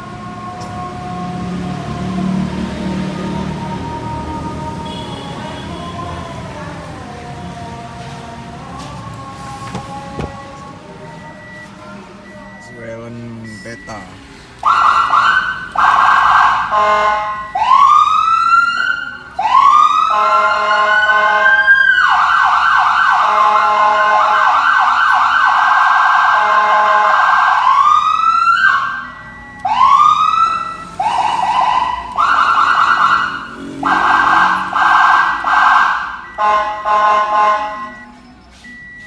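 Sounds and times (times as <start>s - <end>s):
electronic siren wail and yelp: 14.6s - 37.9s.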